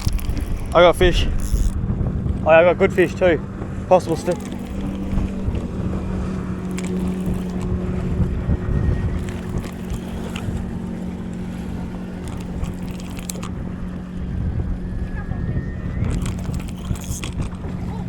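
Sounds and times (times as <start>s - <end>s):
motor humming: 0.0s - 18.0s
wind rumble on microphone: 0.0s - 18.0s
light clicks: 6.6s - 7.7s.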